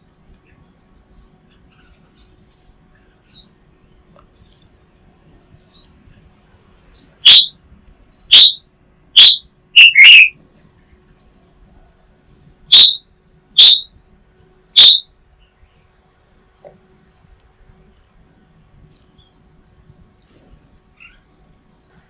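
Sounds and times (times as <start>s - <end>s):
bird whistled calls: 7.2s - 7.6s, 8.3s - 8.6s, 9.2s - 10.3s, 12.7s - 13.0s, 13.6s - 13.9s, 14.8s - 15.0s.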